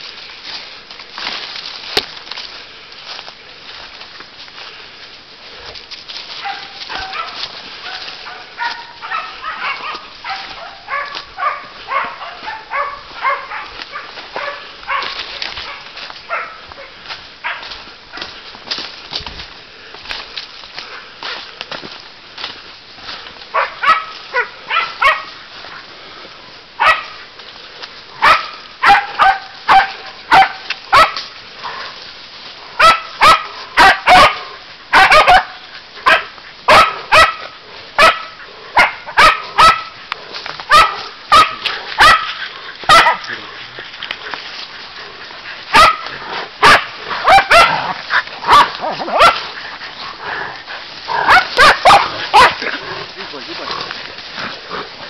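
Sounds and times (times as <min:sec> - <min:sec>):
dogs barking: 0:06.4 - 0:18.3, 0:23.5 - 0:25.9, 0:26.8 - 0:27.3, 0:28.2 - 0:32.0, 0:32.7 - 0:40.0, 0:40.6 - 0:43.5, 0:44.9 - 0:55.0.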